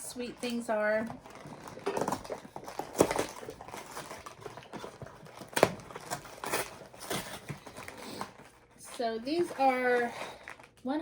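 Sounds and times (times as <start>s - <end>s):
plastic snack wrapper crinkling: 0.2s - 10.8s.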